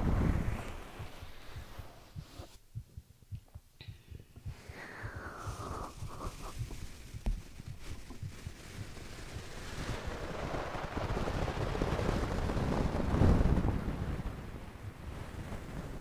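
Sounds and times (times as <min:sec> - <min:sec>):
muffled heartbeat thumps: 0:00.0 - 0:11.5
rushing noise: 0:04.5 - 0:07.3.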